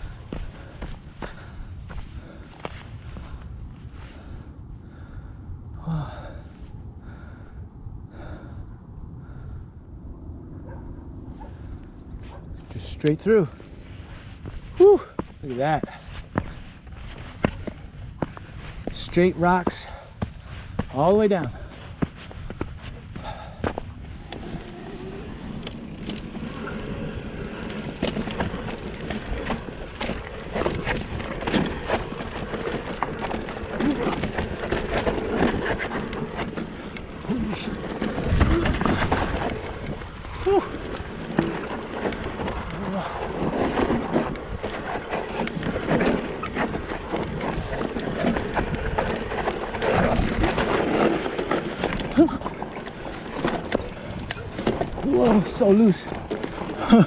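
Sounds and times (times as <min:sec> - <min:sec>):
bike rolling over rocks: 0:00.0 - 0:05.1, 0:11.6 - 0:57.0
steady rumble: 0:00.0 - 0:57.0
bike knocking and rattling on rock: 0:14.4 - 0:57.0.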